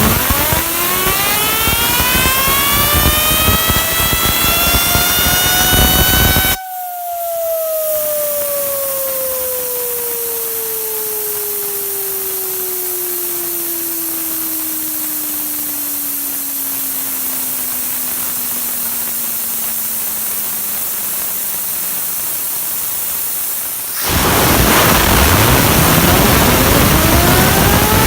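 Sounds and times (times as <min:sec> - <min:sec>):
fidget spinner humming: 0:00.0 - 0:28.0
steady hiss: 0:00.0 - 0:28.0
loud rushing noise: 0:23.9 - 0:28.0.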